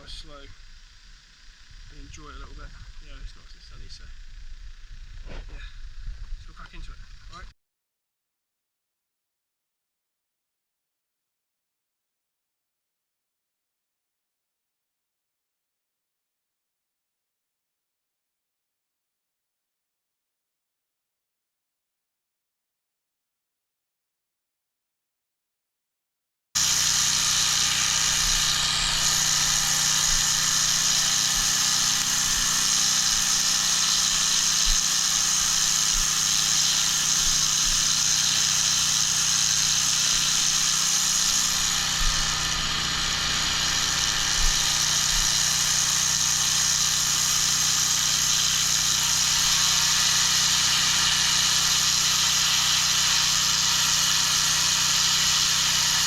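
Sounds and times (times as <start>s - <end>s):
engine and pump humming: 0.0s - 7.5s, 26.6s - 56.0s
water jet hissing on paving: 26.6s - 56.0s.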